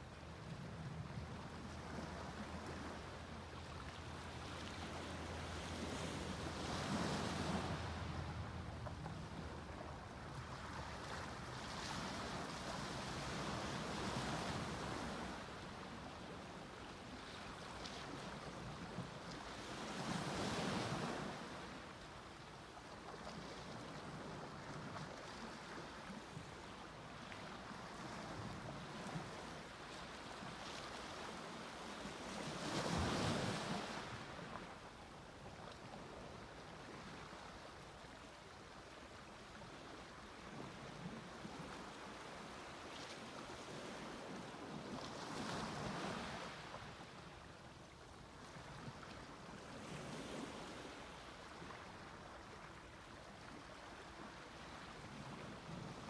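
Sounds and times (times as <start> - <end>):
sea waves breaking on beach: 27.6 - 34.8.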